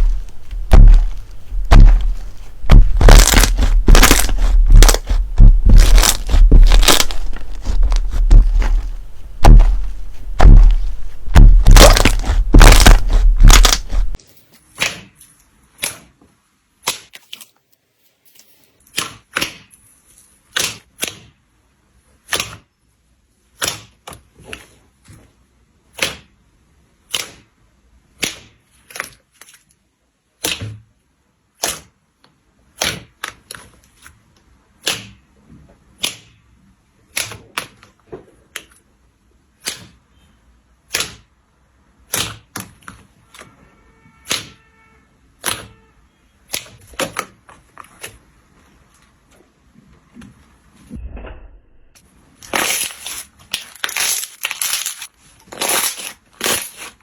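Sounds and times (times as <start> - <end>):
slime clicking and popping: 0.0 - 14.2
slime crackling: 0.0 - 14.2, 52.4 - 57.0.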